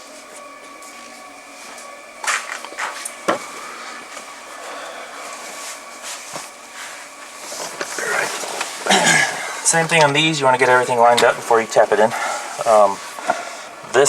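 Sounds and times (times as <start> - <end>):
steady faint hum: 0.0 - 14.0.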